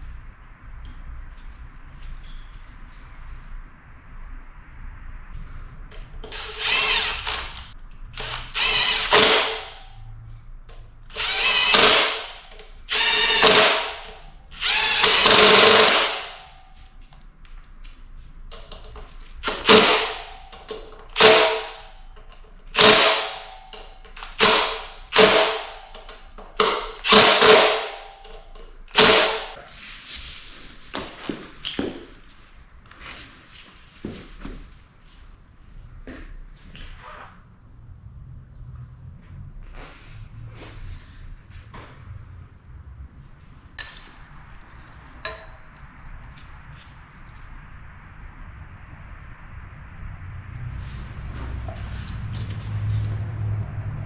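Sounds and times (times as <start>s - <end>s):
handheld power tool spinning: 6.2s - 9.8s, 11.0s - 16.4s, 19.4s - 20.4s, 21.0s - 21.8s, 22.7s - 29.5s.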